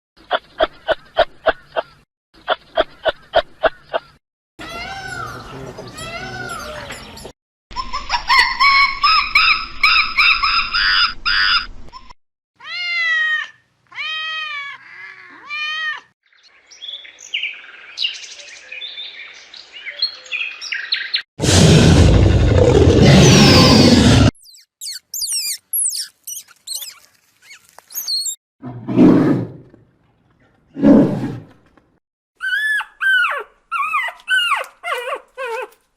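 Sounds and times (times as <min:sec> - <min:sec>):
rising-and-falling animal calls: 0:22.6 - 0:28.4
high rapid animal chirping: 0:23.3 - 0:28.4.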